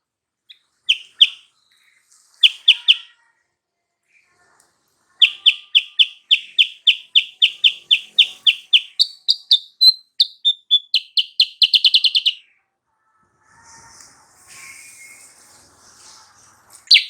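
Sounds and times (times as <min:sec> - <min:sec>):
bird chirping and trilling: 0:00.5 - 0:01.4, 0:02.4 - 0:03.1, 0:05.2 - 0:12.5.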